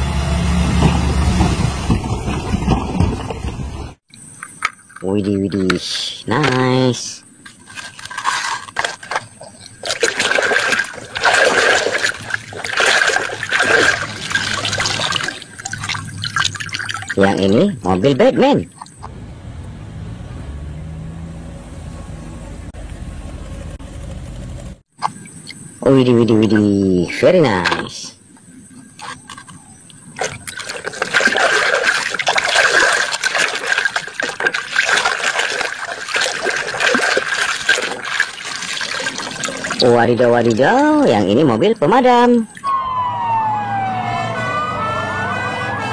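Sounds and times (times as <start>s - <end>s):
water splashing and trickling: 1.2s - 19.1s, 25.0s - 42.9s.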